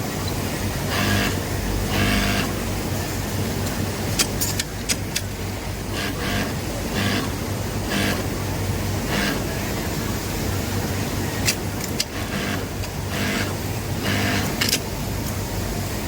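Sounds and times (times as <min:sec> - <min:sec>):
sewing machine motor hum: 0:00.8 - 0:02.8, 0:05.5 - 0:09.7, 0:11.8 - 0:14.8
sewing machine stitching bursts: 0:00.9 - 0:02.7, 0:05.9 - 0:08.4, 0:09.0 - 0:09.5, 0:11.6 - 0:14.8
sharp clicks: 0:04.2 - 0:05.3.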